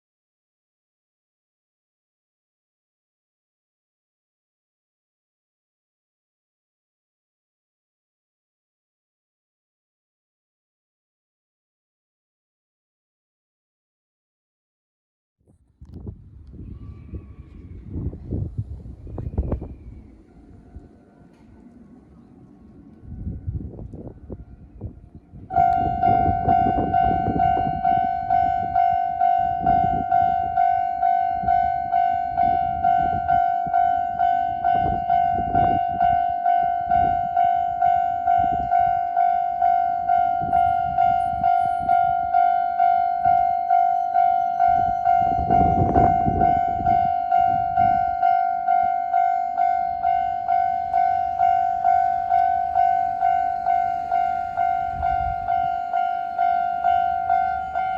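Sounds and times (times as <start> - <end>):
level crossing warning bell: 24.2 - 57.9.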